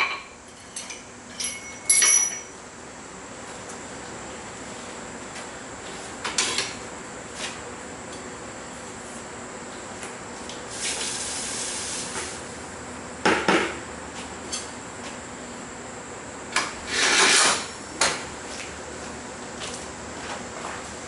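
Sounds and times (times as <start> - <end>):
metal scrape: 16.9 - 17.7.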